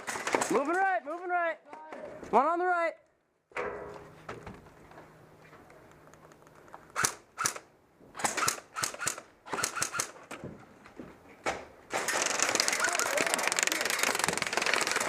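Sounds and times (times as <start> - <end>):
airsoft guns firing: 0.0 - 0.8, 7.0 - 10.2, 11.9 - 15.0.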